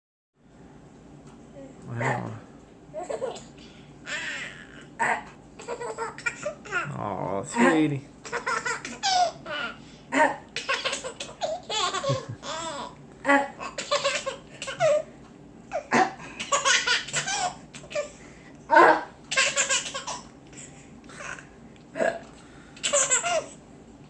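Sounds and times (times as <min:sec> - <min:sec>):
baby laughing: 0:03.0 - 0:07.0, 0:08.2 - 0:15.1, 0:15.7 - 0:21.5, 0:22.8 - 0:23.6.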